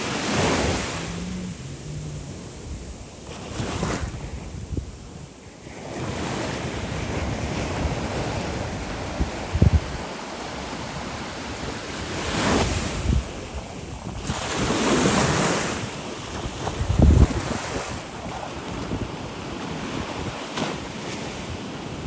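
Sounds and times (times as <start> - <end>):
sea waves breaking on shore: 0.0 - 22.0
wind rumbling on microphone: 0.0 - 22.0.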